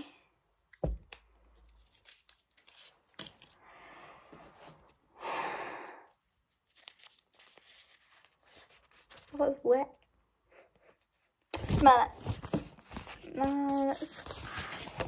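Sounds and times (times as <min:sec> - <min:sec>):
scratchy rubbing on phone: 0:13.0 - 0:15.0.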